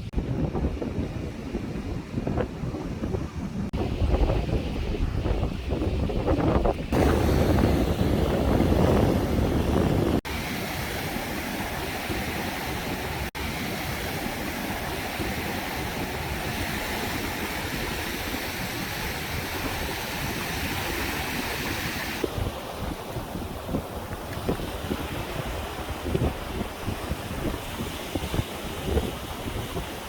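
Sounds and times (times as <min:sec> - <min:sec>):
wind buffeting microphone: 0:00.0 - 0:30.0
ocean surf washing onto beach: 0:06.7 - 0:30.0.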